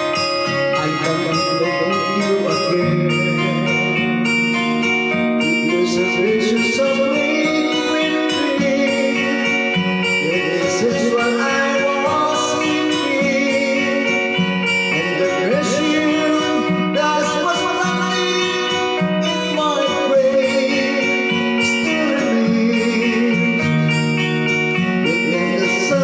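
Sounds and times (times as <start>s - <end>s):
guitar music: 0.0s - 26.0s.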